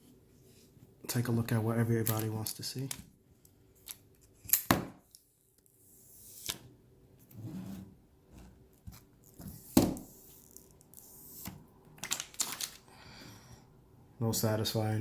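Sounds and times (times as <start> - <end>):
plastic film rustling and crinkling: 12.0 - 12.9
sharp plastic crackles: 12.0 - 12.9.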